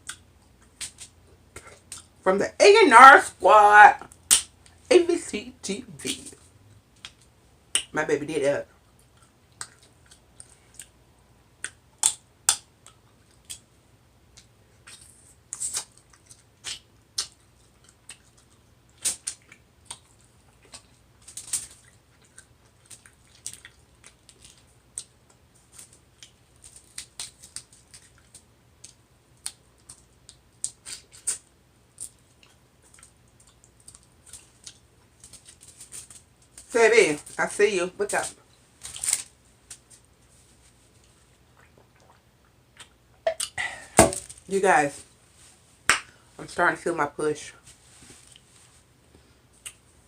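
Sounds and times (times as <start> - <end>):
shells cracking and snapping: 4.2 - 4.5.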